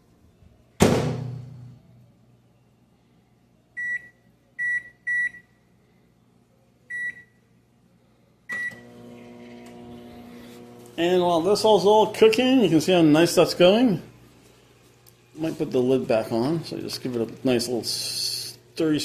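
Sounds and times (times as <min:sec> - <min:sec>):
microwave keypad beeping: 0:03.8 - 0:05.5, 0:06.9 - 0:07.4, 0:08.5 - 0:08.9
microwave oven humming: 0:08.4 - 0:19.0.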